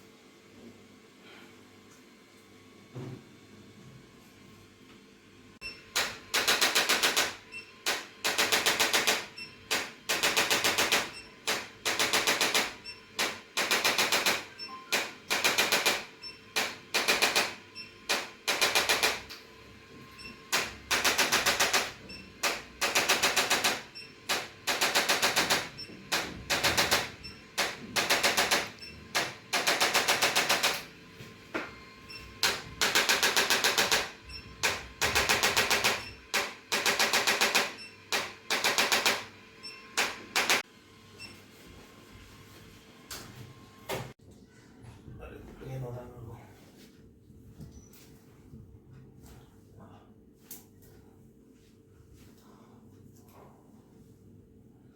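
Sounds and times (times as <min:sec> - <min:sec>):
rapid mechanical tapping: 0:05.9 - 0:14.4, 0:20.5 - 0:30.8.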